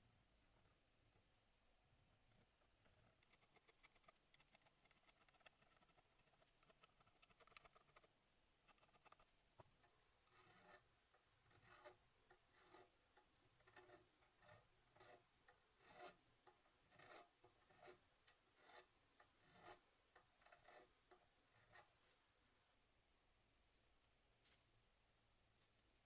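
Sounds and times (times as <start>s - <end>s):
file rasping on metal: 9.8s - 22.0s.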